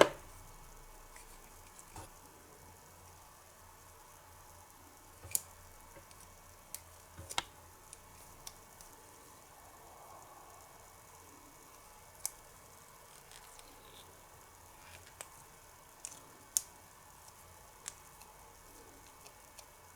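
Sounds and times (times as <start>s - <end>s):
faint steady hiss: 0.0s - 19.9s
small plastic clicks and taps: 5.2s - 8.9s.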